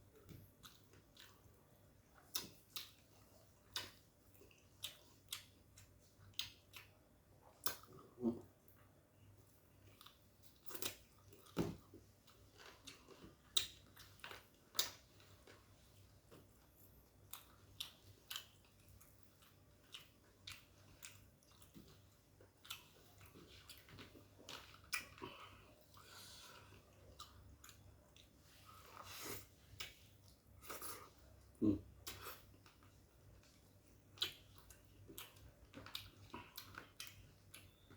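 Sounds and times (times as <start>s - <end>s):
person chewing: 0.1s - 8.8s, 9.4s - 37.9s
mouth clicks and smacks: 34.1s - 37.7s.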